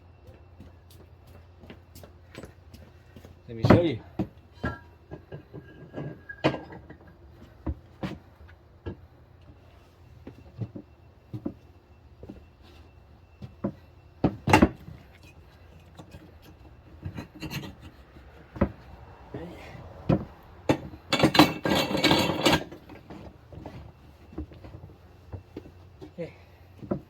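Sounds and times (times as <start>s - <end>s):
tools and rim knocking: 20.0s - 23.1s.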